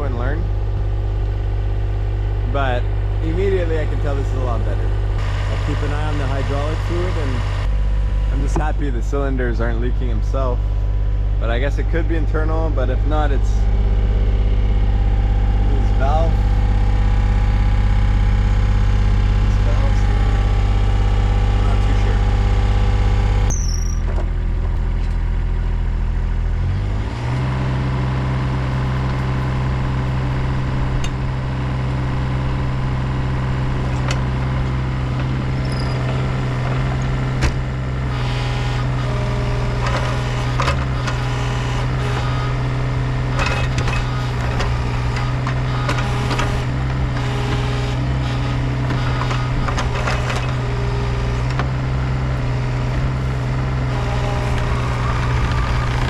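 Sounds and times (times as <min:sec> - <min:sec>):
excavator diesel engine running: 0:00.0 - 0:56.0
machine clanks and knocks: 0:39.8 - 0:41.3, 0:43.3 - 0:47.6, 0:48.9 - 0:50.6.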